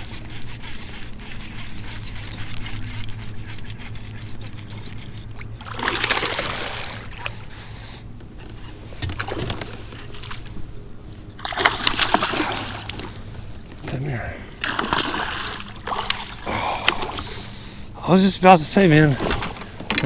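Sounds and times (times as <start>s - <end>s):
steady low hum: 0.0s - 20.0s
water splashing: 5.4s - 8.0s, 11.3s - 19.8s.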